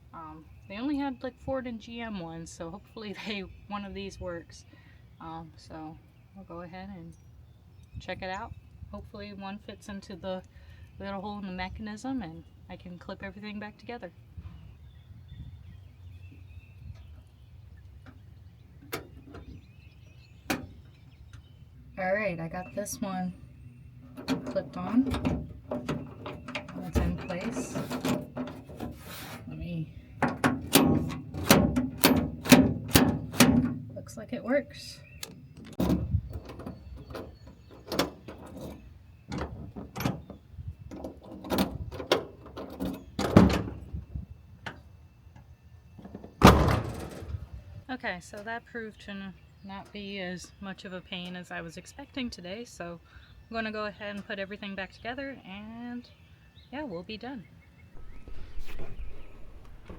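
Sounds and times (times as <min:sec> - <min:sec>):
door lock clicking and clunking: 0:30.2 - 0:33.9, 0:35.2 - 0:43.8, 0:46.0 - 0:47.4
low steady rumble: 0:58.0 - 0:59.9.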